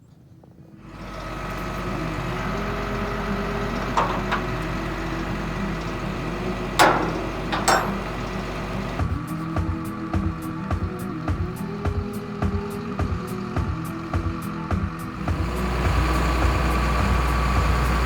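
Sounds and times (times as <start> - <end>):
truck engine running: 0.8 - 18.0
sharp knocks: 6.8 - 8.1.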